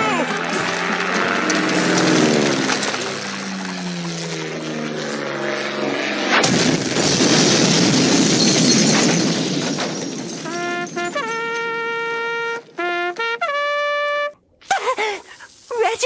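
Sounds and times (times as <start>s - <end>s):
cartoon explosion rumble: 6.3s - 12.9s.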